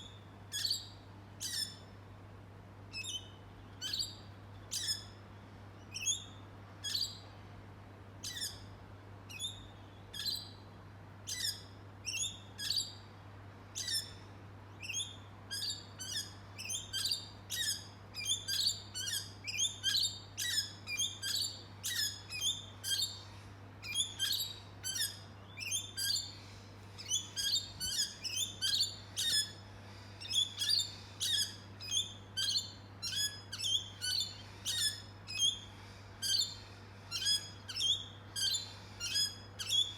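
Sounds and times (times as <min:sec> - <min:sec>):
steady low hum: 0:00.0 - 0:39.9
birds chirping: 0:14.8 - 0:39.9.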